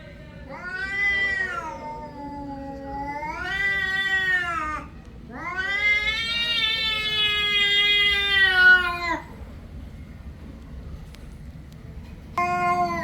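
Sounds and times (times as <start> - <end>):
cat yowling: 0.5 - 9.3.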